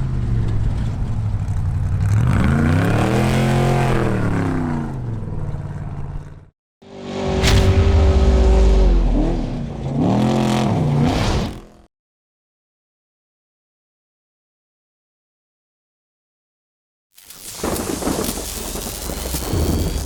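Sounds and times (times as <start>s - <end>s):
race vehicle engine revving: 6.8s - 11.8s.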